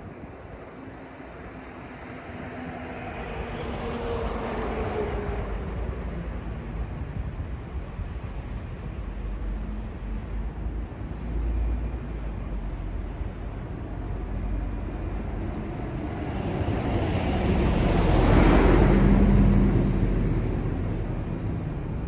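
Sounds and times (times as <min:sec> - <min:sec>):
city traffic rumble: 0:00.0 - 0:22.0
vehicle passing close: 0:14.2 - 0:21.0.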